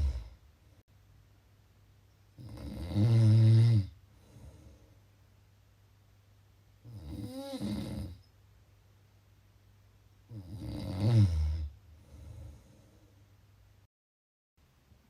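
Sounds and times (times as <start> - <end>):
person snoring: 0.0 - 0.4, 2.4 - 4.7, 6.8 - 8.2, 10.3 - 12.8
faint breath: 4.1 - 5.2, 11.9 - 13.4.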